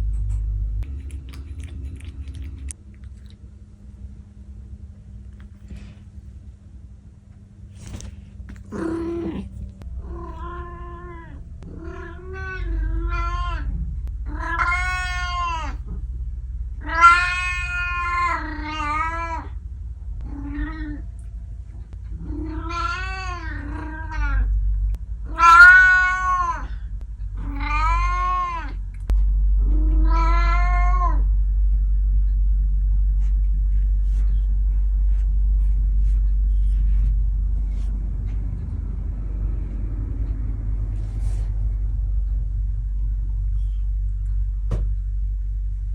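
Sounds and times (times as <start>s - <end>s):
low steady rumble: 0.0s - 45.9s
cat meowing: 8.7s - 13.7s, 14.3s - 15.8s, 16.8s - 19.5s, 25.3s - 26.7s, 27.4s - 28.8s, 29.8s - 31.2s.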